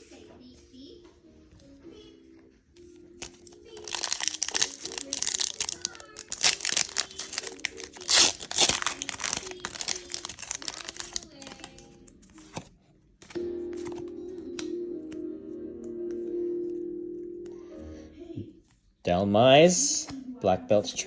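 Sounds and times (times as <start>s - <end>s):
quiet background music: 0.0s - 21.0s
foil wrapper crinkling and tearing: 3.2s - 14.0s.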